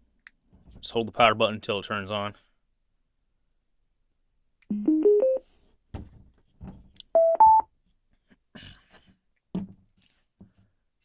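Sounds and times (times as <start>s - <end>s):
speaker rising beeps: 4.7s - 5.4s, 7.2s - 7.6s.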